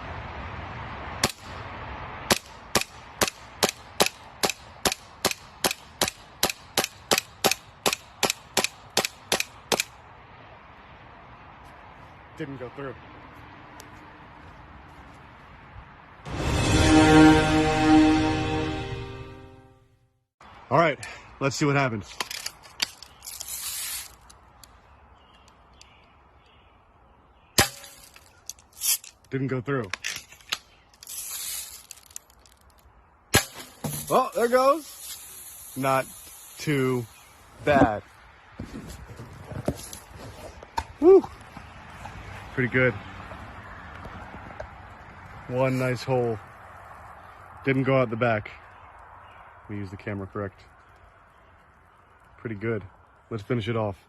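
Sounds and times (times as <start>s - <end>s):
air gun shots snapping: 2.3s - 10.0s
short hiss: 23.3s - 24.3s, 31.0s - 32.1s, 33.9s - 37.5s.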